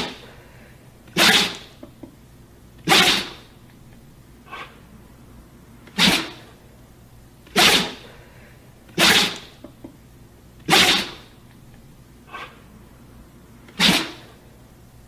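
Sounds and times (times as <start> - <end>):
dog sneezing: 1.1 - 1.8, 2.8 - 3.5, 4.5 - 4.8, 5.8 - 6.6, 7.5 - 8.2, 8.9 - 9.6, 10.6 - 11.4, 12.3 - 12.6, 13.7 - 14.4.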